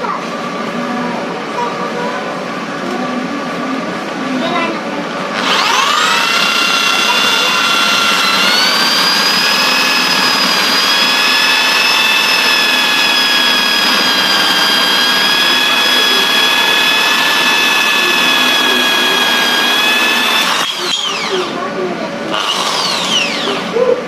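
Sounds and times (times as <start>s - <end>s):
electric drill motor whine: 5.4s - 21.6s, 22.3s - 23.8s.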